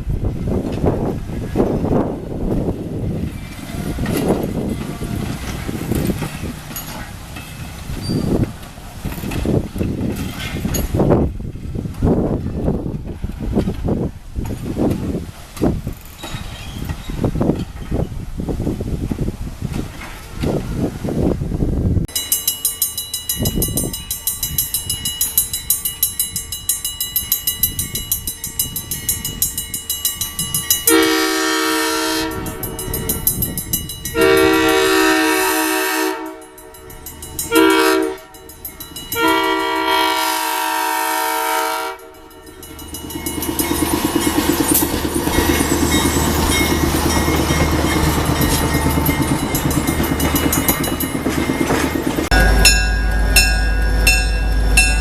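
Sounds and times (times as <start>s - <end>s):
rushing noise of train running: 0.0s - 55.0s
steam locomotive exhaust chuffs: 27.2s - 55.0s
steam whistle blasts: 30.9s - 32.8s, 34.2s - 36.5s, 37.5s - 38.3s, 39.2s - 42.2s.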